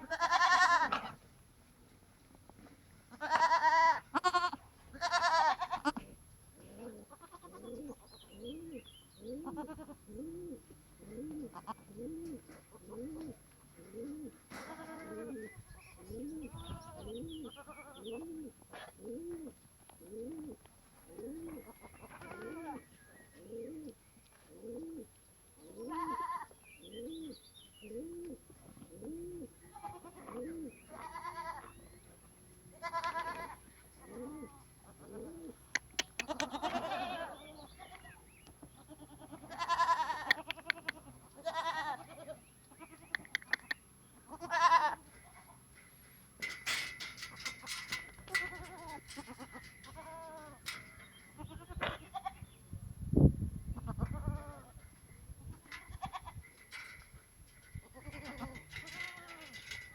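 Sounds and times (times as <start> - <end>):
goats bleating: 0.0 - 1.1, 3.1 - 6.1, 6.8 - 7.7, 14.6 - 15.4, 29.7 - 31.7, 32.8 - 34.6, 36.2 - 38.2, 38.8 - 43.2, 44.3 - 45.0, 58.0 - 59.8
low cooing calls: 6.6 - 31.7, 34.0 - 38.1, 53.7 - 59.9.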